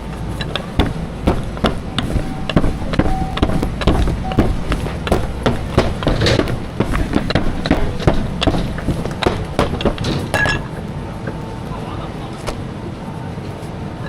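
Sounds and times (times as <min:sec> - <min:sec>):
low rumble: 0:00.0 - 0:13.0
hard objects knocking and clacking: 0:00.3 - 0:11.4.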